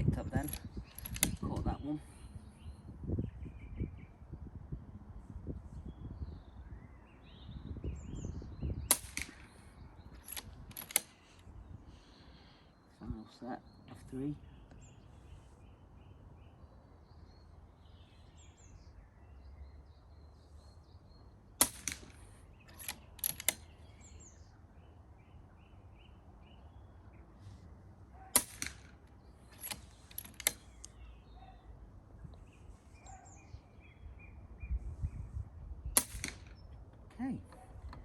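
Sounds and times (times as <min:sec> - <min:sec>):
low wind rumble: 0:00.0 - 0:27.1, 0:27.7 - 0:38.0
muffled air rifle shots: 0:08.8 - 0:11.2, 0:21.6 - 0:23.7, 0:28.3 - 0:30.7, 0:36.0 - 0:36.6
faint bird chirps: 0:29.2 - 0:37.8.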